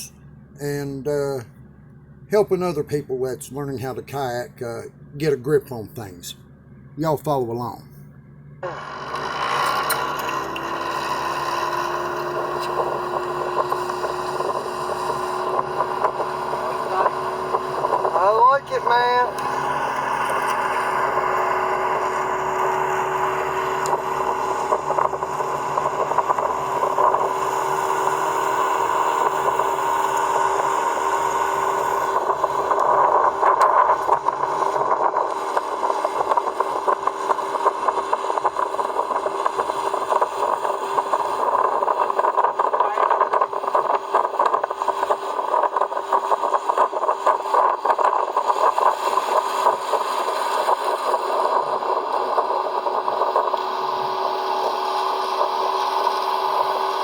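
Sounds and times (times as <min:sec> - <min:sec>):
outboard motor running: 0:00.0 - 0:57.0
rough crackling noise: 0:08.7 - 0:57.0.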